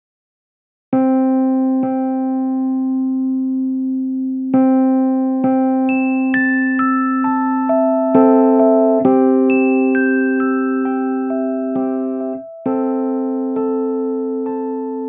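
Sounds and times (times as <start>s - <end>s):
slow electric piano notes: 5.9s - 15.0s.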